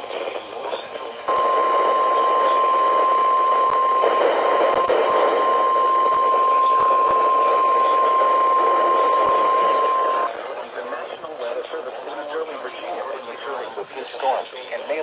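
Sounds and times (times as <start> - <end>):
steady radio alert tone: 0.0 - 10.4
radio static hiss and crackles: 0.0 - 15.0.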